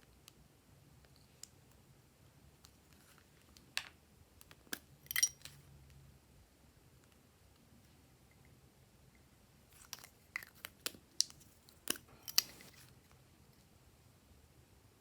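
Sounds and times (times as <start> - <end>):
hard object clinking: 4.7 - 5.6, 11.9 - 12.9.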